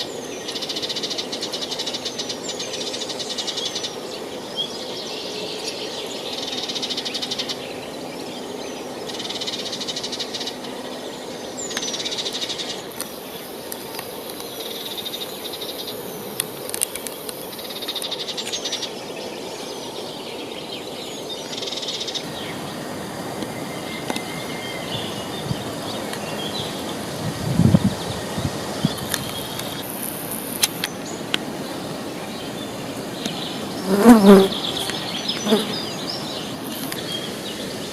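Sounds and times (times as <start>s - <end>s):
thin high hiss: 22.1s - 37.9s
river rushing: 22.2s - 33.8s, 34.5s - 37.9s.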